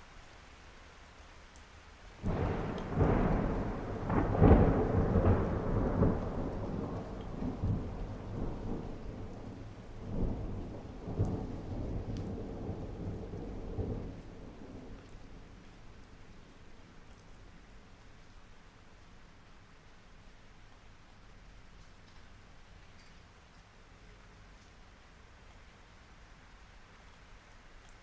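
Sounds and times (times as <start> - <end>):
steady rain: 0.0 - 28.0
thunder rumbling: 2.2 - 16.3.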